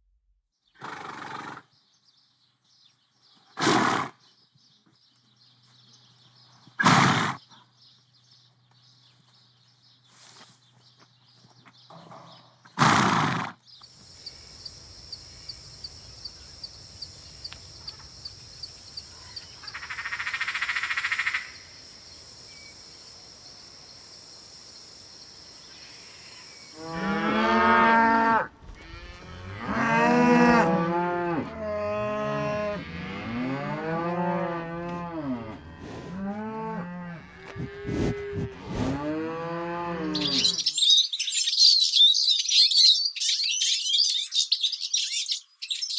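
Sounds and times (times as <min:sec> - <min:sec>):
faint regular ticks: 0:13.8 - 0:26.8
cattle mooing: 0:26.8 - 0:34.6.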